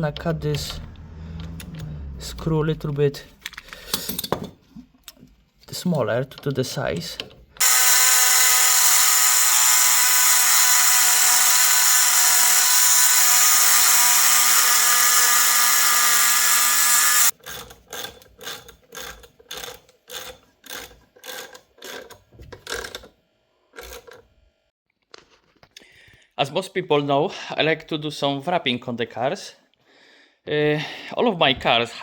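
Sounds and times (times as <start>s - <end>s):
power cutting tool whining: 7.6s - 17.3s.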